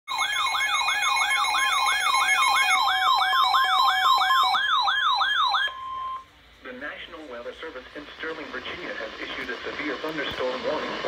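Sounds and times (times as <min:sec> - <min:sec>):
warbling electronic siren alert tone: 0:00.1 - 0:06.3.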